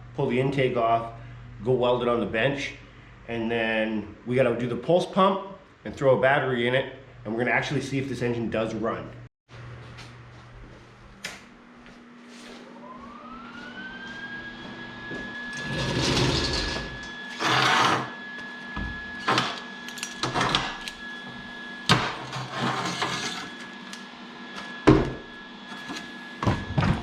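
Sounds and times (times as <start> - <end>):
electric motor whining: 15.0 - 21.5.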